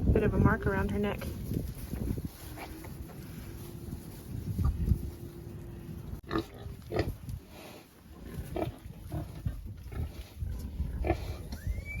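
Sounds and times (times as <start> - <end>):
pigs grunting: 6.2 - 11.6.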